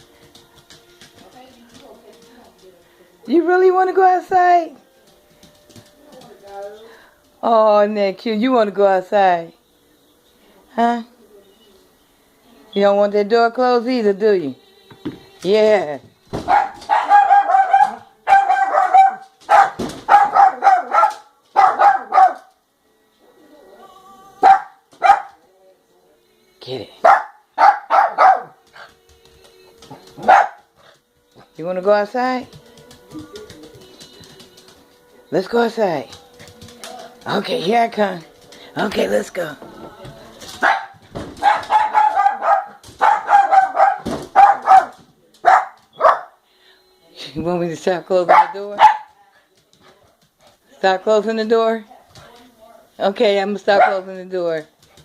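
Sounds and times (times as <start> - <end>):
dog barking: 16.4 - 22.5, 24.4 - 25.4, 27.0 - 28.6, 30.2 - 30.7, 40.6 - 46.4, 48.3 - 49.2, 53.8 - 54.1.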